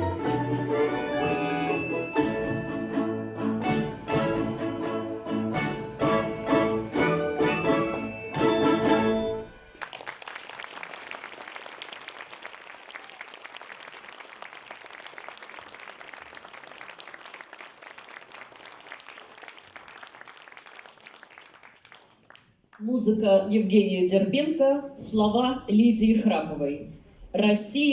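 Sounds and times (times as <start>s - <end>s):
folk orchestra with balalaikas: 0.0s - 9.8s
audience applauding: 5.6s - 22.8s.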